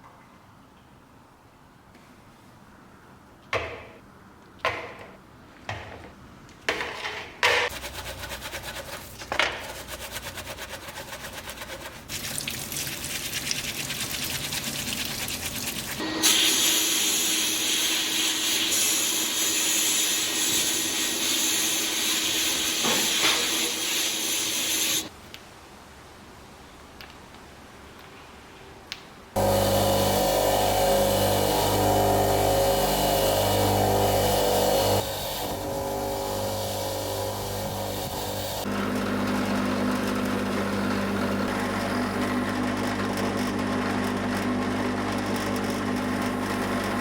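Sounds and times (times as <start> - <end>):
loud steady hiss: 16.0 - 25.2.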